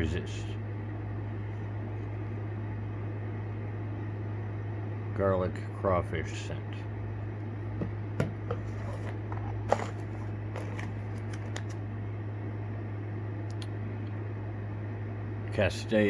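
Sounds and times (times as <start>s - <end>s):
plastic packaging crinkling: 9.5s - 11.8s.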